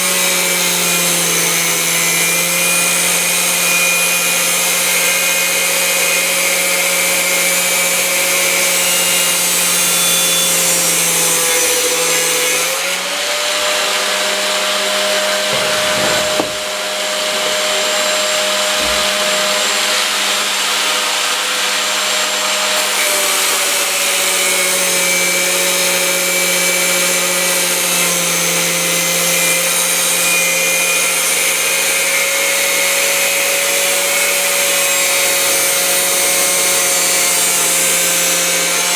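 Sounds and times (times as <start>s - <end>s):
angle grinder cutting pipe: 0.0s - 38.9s
short knock: 15.5s - 16.8s.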